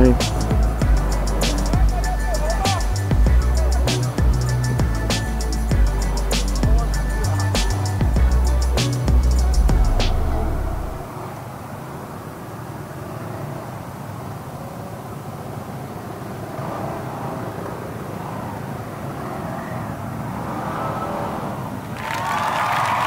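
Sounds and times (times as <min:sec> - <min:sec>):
held high tone: 0:00.0 - 0:11.1
road traffic rumble: 0:00.0 - 0:11.9, 0:15.2 - 0:22.0.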